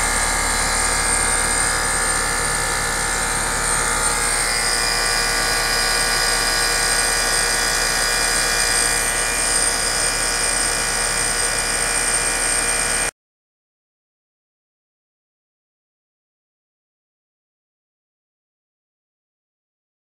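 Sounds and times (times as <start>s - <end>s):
air conditioner unit humming: 0.0s - 13.0s.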